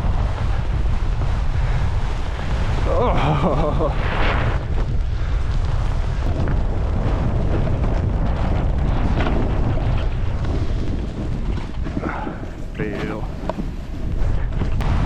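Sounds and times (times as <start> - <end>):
snowboard hissing through snow: 0.0 - 6.3
wind buffeting microphone: 0.0 - 15.0.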